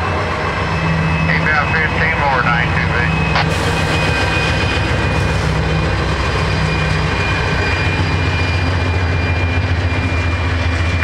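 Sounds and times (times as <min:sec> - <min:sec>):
diesel engine drone: 0:00.0 - 0:11.0
thin steady whine: 0:00.8 - 0:03.8.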